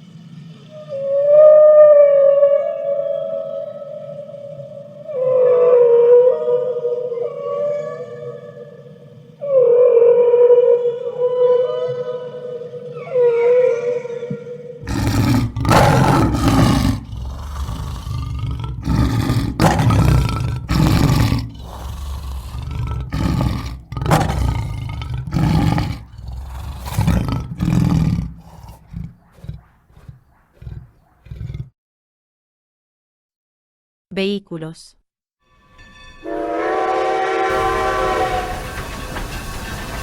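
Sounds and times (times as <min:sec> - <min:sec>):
higher wavering animal call: 0:00.7 - 0:30.8
large animal deep calls: 0:00.7 - 0:31.7.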